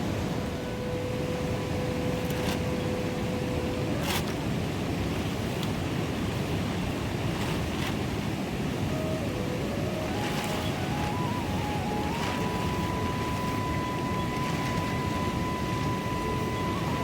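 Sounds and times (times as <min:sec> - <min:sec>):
river rushing: 0:00.0 - 0:17.0.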